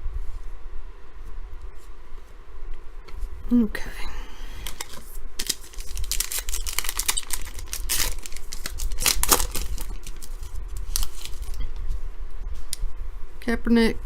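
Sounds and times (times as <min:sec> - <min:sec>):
foil wrapper tearing and crinkling: 0:04.6 - 0:11.6.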